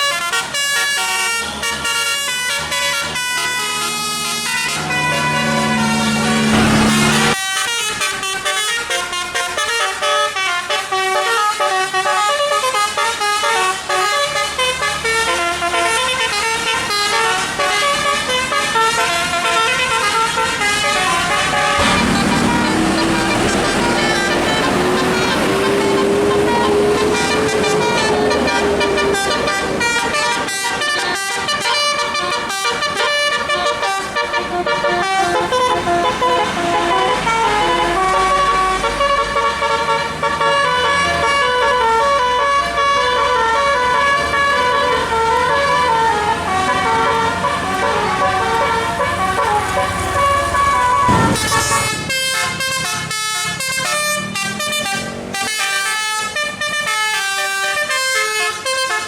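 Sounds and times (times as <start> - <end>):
bus engine rumble: 0.0 - 58.8
musical bus horns playing melody: 0.0 - 59.0.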